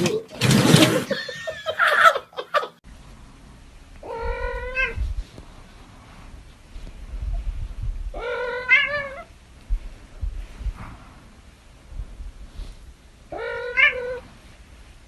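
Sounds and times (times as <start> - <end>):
cat meowing: 4.0 - 5.0, 8.2 - 9.3, 13.3 - 14.2.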